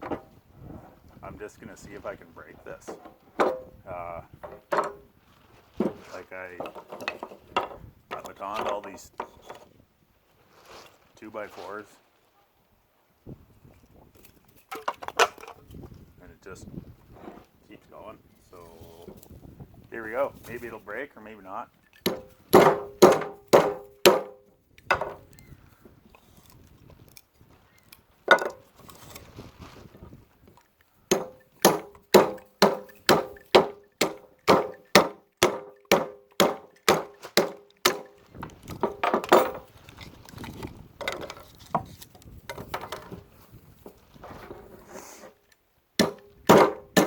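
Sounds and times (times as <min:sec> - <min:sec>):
metal clamp hammering knife spine: 0:22.1 - 0:25.2, 0:31.1 - 0:38.2, 0:46.0 - 0:47.0.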